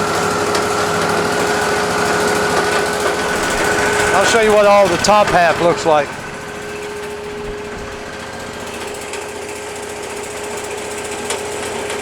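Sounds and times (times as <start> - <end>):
sawmill engine running: 0.0 - 12.0.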